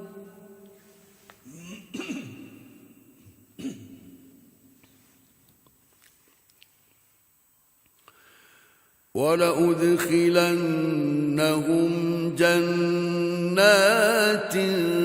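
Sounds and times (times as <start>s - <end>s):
echo of recited phrase: 0.0s - 0.9s, 9.2s - 15.0s.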